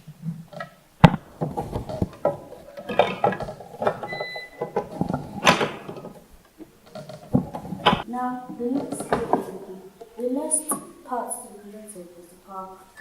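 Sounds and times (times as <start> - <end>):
hands fitting fan into computer: 0.6 - 6.2.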